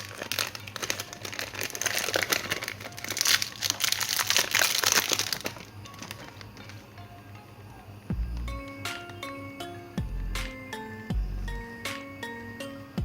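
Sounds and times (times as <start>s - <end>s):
plastic packaging crinkling: 0.0s - 7.1s
background music: 0.0s - 13.0s.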